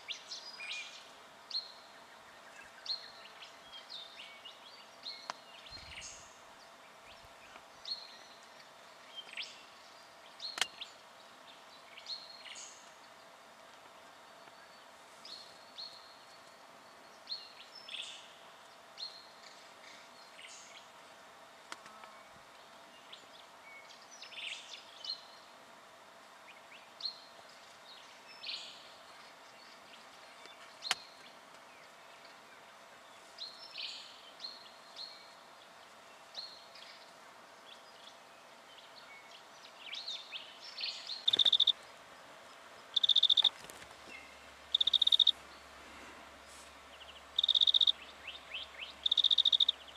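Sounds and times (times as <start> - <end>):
high bird calls: 39.9 - 41.8, 42.8 - 45.7, 46.8 - 49.9.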